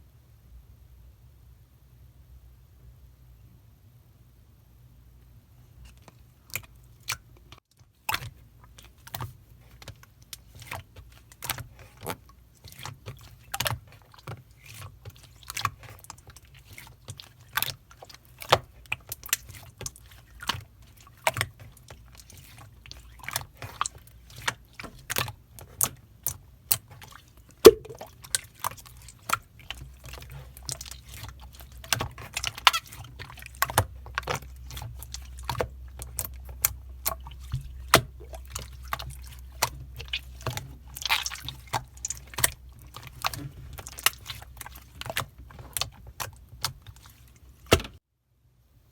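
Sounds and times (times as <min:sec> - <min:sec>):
slime clicking and popping: 0:27.7 - 0:28.0
slime snap: 0:27.7 - 0:28.0.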